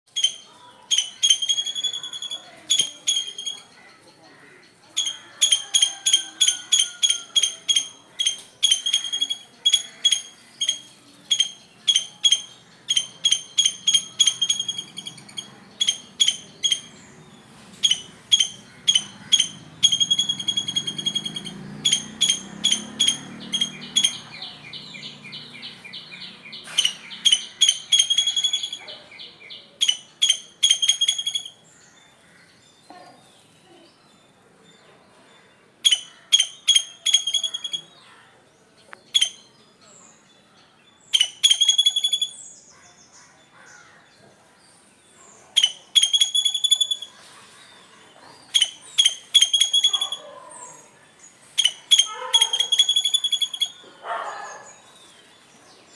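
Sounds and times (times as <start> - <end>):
squirrel chirping: 0.1 - 3.9, 4.9 - 31.8, 35.8 - 38.0, 39.1 - 39.7, 41.0 - 42.6, 45.3 - 47.3, 48.5 - 55.1.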